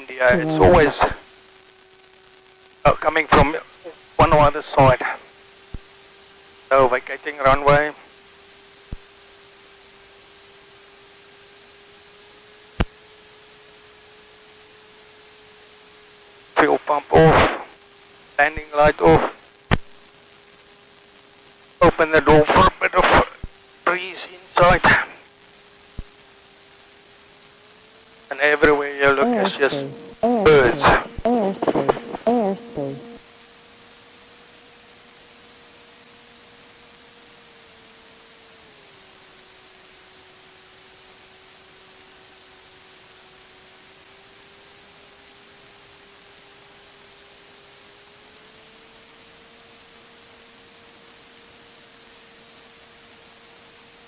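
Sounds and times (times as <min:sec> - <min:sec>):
intercom audio hiss: 0:00.0 - 0:01.4, 0:02.8 - 0:08.2, 0:16.5 - 0:19.9, 0:21.8 - 0:25.4, 0:28.2 - 0:33.2
faint hum: 0:00.0 - 0:10.3, 0:14.4 - 0:33.4
electronic hiss: 0:00.0 - 0:54.0
faint steady whine: 0:00.0 - 0:54.0.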